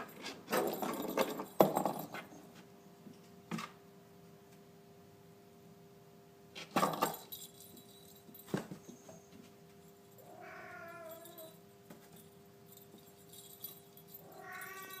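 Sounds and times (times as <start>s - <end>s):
cat meowing: 10.2s - 11.5s, 14.2s - 15.0s.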